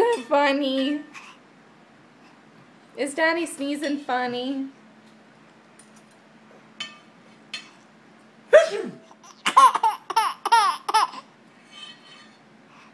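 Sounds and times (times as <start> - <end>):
baby vocal burst: 8.6 - 11.3
baby laughing: 9.1 - 11.3.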